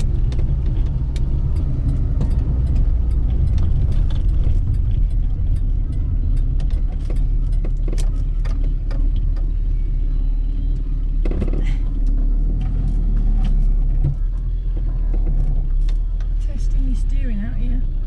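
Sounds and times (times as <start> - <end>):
light clicks and rattles: 0.0 - 9.8
car engine drone: 0.0 - 18.0
road noise: 0.0 - 18.0.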